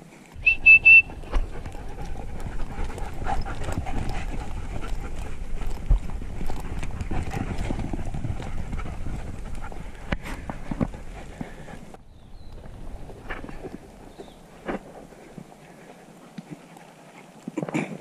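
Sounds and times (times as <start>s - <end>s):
dog paws clicking and scuffing: 0.3s - 18.0s
footsteps crunching on dirt path: 0.4s - 17.4s.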